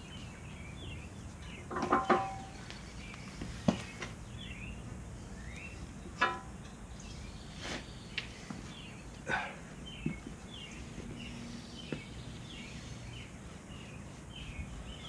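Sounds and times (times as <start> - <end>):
birds chirping: 0.0 - 15.0
metallic clanks: 1.4 - 2.6, 6.2 - 6.8.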